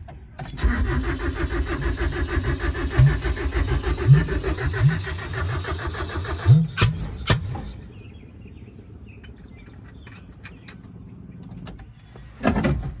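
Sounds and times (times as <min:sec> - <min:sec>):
low steady rumble: 0:00.6 - 0:09.6.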